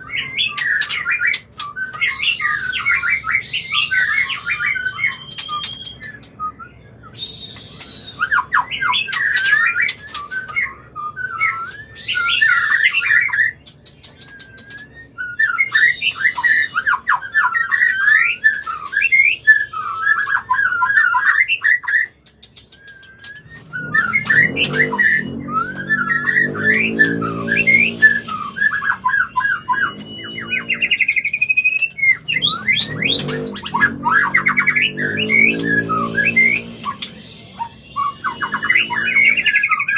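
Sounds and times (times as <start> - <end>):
bird singing whistled phrases: 0.0 - 39.9
harsh rasping bird notes: 0.0 - 39.9
low pulsing sound: 32.2 - 39.4.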